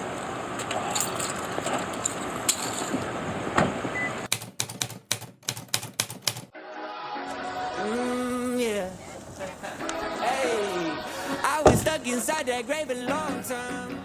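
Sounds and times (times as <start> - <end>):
steady background noise: 0.0 - 4.5, 7.3 - 13.9
rapid sharp clicks: 4.3 - 6.5.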